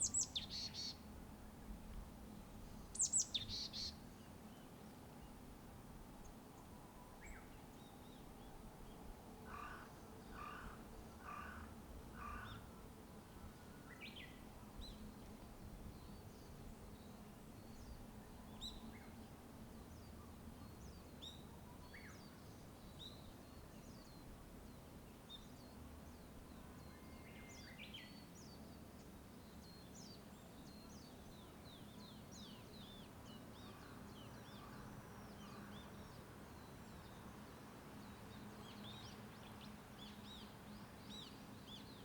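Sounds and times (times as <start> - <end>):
small birds chirping: 0.0 - 1.0.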